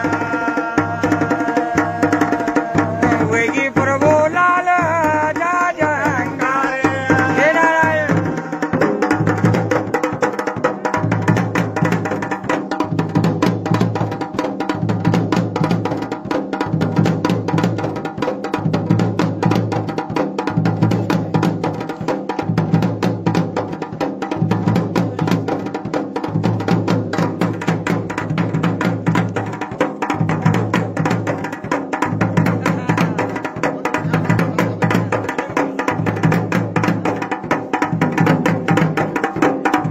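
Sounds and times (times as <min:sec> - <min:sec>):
person singing: 0:00.0 - 0:09.8
folk drums in fast rhythm: 0:00.0 - 0:39.9.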